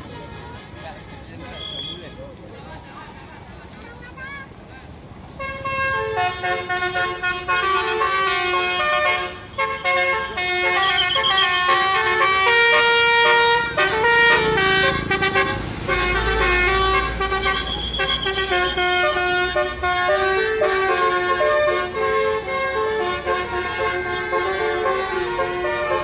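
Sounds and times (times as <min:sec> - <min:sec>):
multi-tone musical bus horn: 0:05.3 - 0:26.0.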